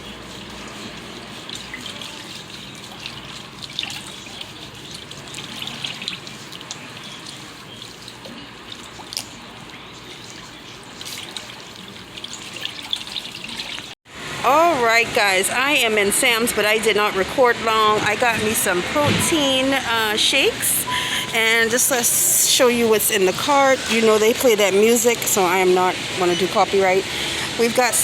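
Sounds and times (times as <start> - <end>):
water trickling and splashing: 0.0 - 14.0.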